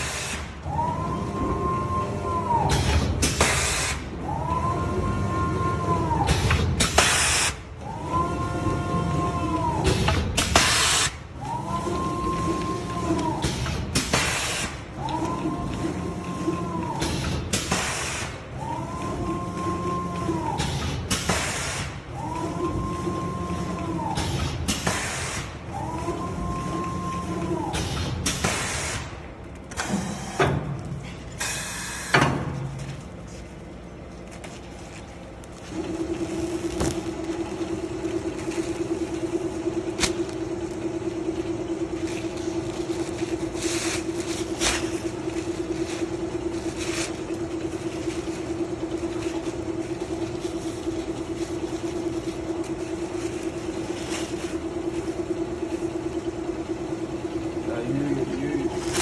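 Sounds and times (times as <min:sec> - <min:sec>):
machine running with fluttering hum: 0:32.8 - 0:59.0.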